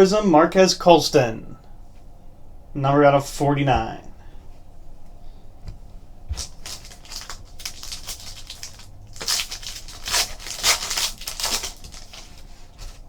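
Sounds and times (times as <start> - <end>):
plastic packaging crinkling: 6.3 - 13.0.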